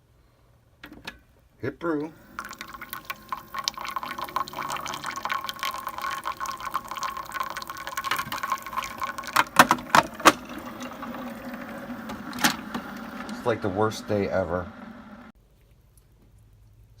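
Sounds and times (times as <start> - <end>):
coffee brewer pumping: 2.0 - 15.3
water gurgling and spattering: 2.0 - 15.3.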